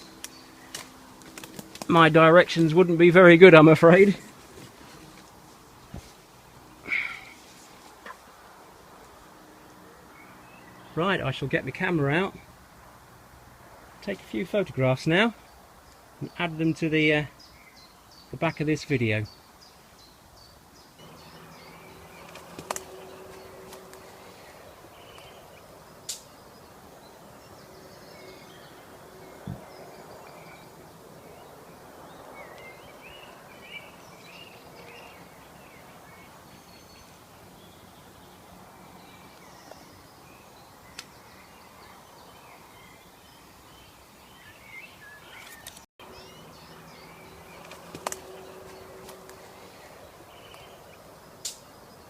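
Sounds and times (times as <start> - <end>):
small birds chirping: 0.0 - 52.0
sharp clicks: 47.5 - 48.4.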